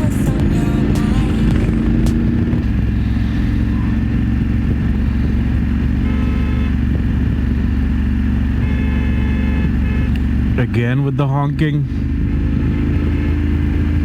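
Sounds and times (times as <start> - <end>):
car horn: 0.0 - 2.6, 5.0 - 7.6, 8.3 - 10.8, 12.6 - 14.0
motorcycle engine running: 0.0 - 14.0
road and wind noise: 0.0 - 14.0.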